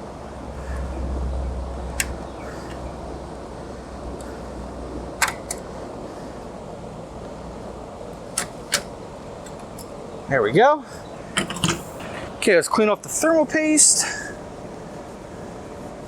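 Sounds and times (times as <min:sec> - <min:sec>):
steady low rumble: 0:00.0 - 0:10.3
sharp plastic clicks: 0:05.2 - 0:05.7, 0:08.2 - 0:09.9.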